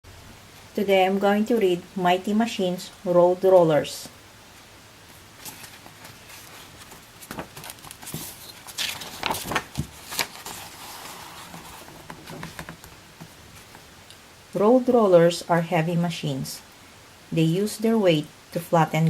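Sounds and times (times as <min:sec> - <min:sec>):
book pages turning: 0:05.1 - 0:13.8.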